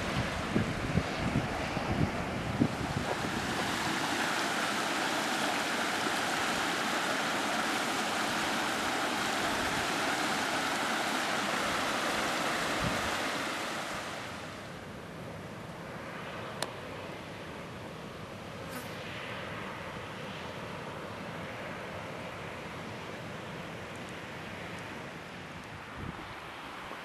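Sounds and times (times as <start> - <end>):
steam hissing from vent: 2.5 - 14.2.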